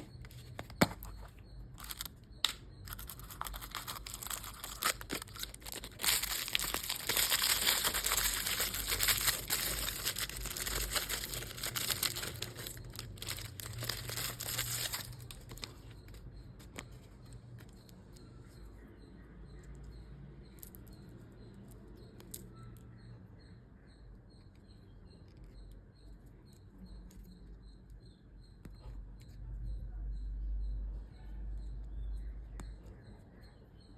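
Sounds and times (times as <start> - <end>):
plastic wrapper crinkling and tearing: 1.8 - 16.0.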